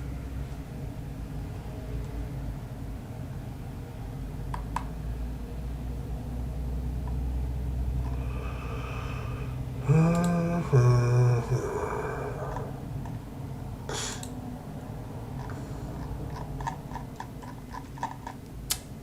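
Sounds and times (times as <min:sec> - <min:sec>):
low background hum: 0:00.0 - 0:19.0
man humming: 0:08.0 - 0:12.9.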